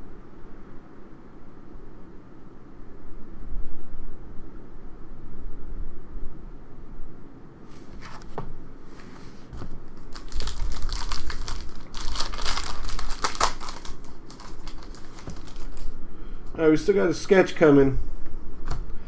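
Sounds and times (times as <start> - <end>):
card pack wrapper tearing and crinkling: 9.9 - 16.0.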